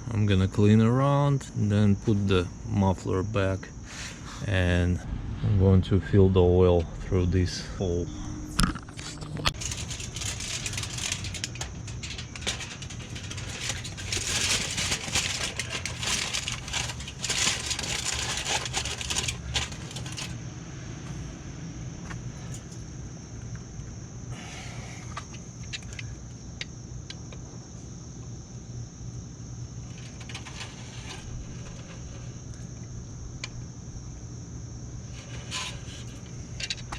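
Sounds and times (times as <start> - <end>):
steady low hum: 0.0 - 36.9
tools and metal parts clinking: 9.5 - 20.4, 29.9 - 32.0.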